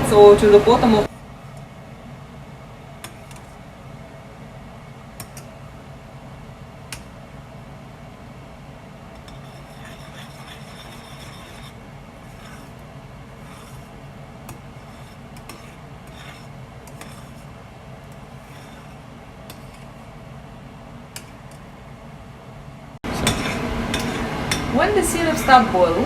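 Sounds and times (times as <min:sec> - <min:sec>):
steady low hum: 0:00.0 - 0:26.0
spoon scraping a pan: 0:03.0 - 0:03.6, 0:09.2 - 0:20.1, 0:23.1 - 0:24.8.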